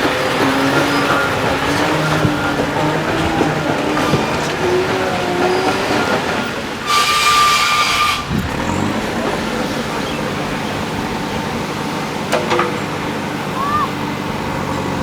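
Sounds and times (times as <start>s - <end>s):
heavy diesel machinery running: 0.0s - 15.0s
loud whistling hiss: 6.8s - 8.3s.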